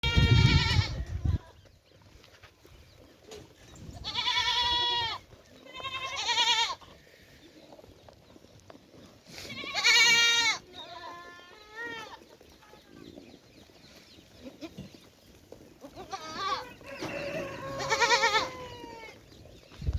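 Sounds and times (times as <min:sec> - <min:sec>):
goats bleating: 0:00.0 - 0:01.6, 0:04.0 - 0:07.1, 0:09.4 - 0:12.9, 0:15.8 - 0:19.3.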